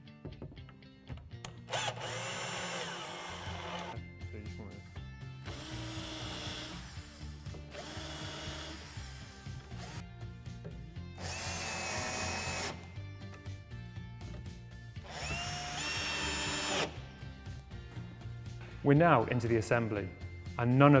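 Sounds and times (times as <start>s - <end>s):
background music: 0.0s - 21.0s
cordless drill driving screws: 1.7s - 4.0s, 5.5s - 10.0s, 11.2s - 12.9s, 15.1s - 17.0s.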